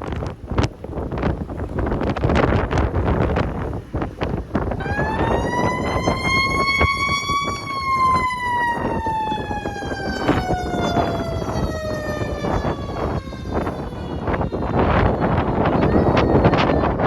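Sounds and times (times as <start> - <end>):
wind buffeting microphone: 0.0 - 17.0
siren winding up and down: 4.8 - 17.0.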